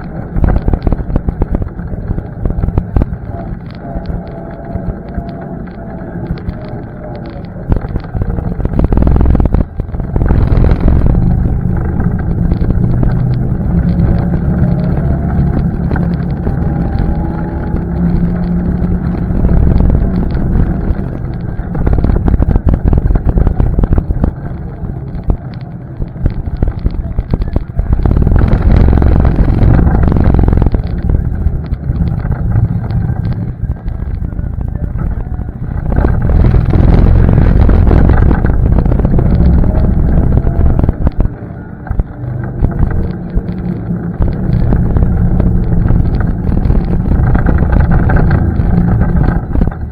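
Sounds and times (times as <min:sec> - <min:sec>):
quad bike engine revving: 0:08.3 - 0:22.2.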